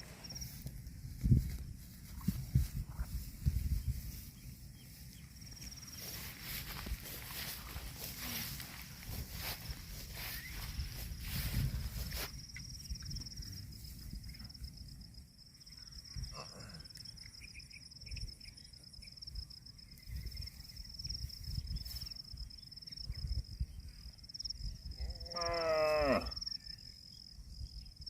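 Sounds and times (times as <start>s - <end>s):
insect chirring: 2.5s - 28.0s
cow mooing: 25.1s - 26.4s.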